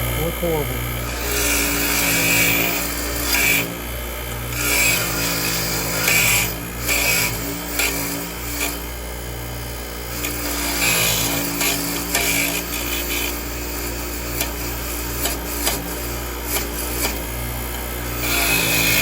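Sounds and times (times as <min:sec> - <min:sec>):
steady low hum: 0:00.0 - 0:04.6.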